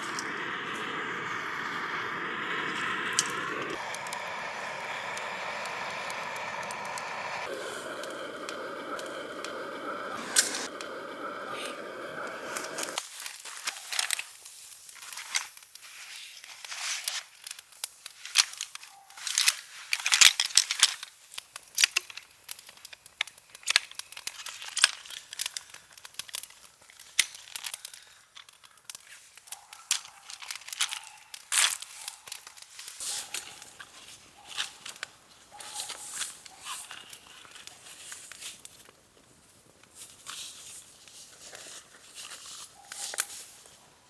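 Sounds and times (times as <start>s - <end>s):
wrapper crinkling and rustling: 18.2s - 35.0s.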